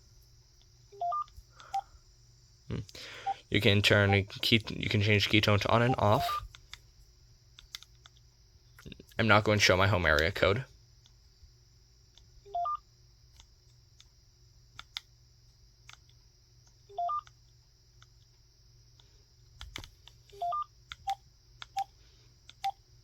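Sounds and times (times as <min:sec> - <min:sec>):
phone key beeps: 0:01.0 - 0:01.3, 0:05.8 - 0:06.5, 0:12.5 - 0:12.8, 0:16.9 - 0:17.3.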